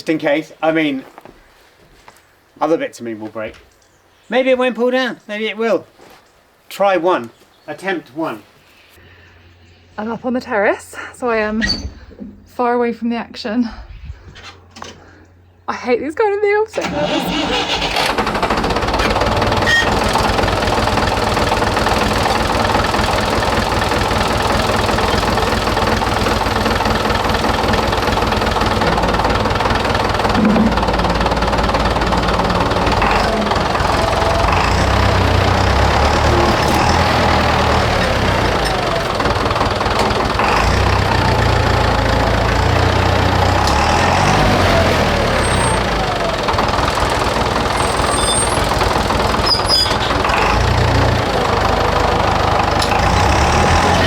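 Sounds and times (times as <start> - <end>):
tractor engine running: 16.7 - 54.0.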